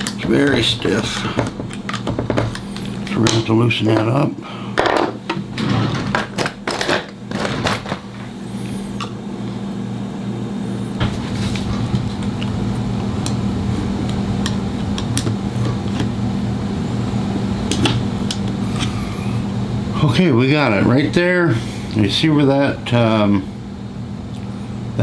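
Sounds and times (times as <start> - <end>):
low mechanical hum: 0.0 - 25.0.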